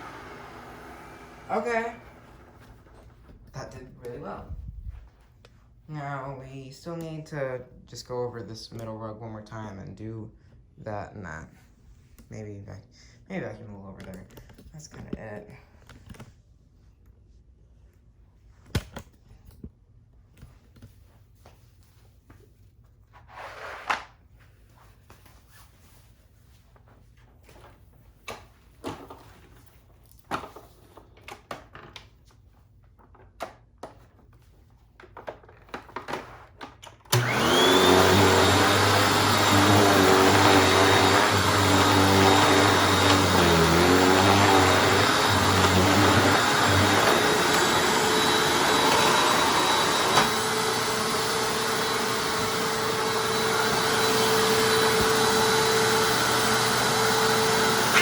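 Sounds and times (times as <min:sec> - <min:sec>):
upright vacuum cleaner running: 0:00.0 - 0:03.2, 0:37.1 - 0:58.0.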